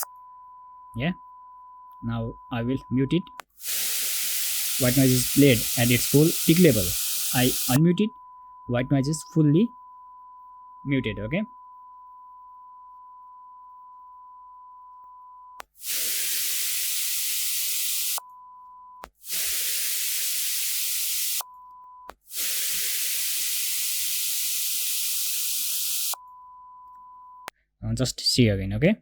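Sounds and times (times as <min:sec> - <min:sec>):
sine-wave test tone: 0:00.0 - 0:03.4, 0:04.8 - 0:15.7, 0:17.9 - 0:19.2, 0:21.3 - 0:22.2, 0:24.7 - 0:27.5
white noise: 0:03.6 - 0:07.8.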